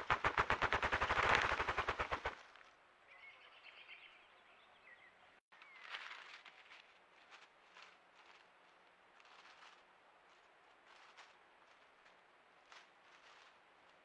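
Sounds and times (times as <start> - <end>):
faint bird chirps: 3.0 - 6.1.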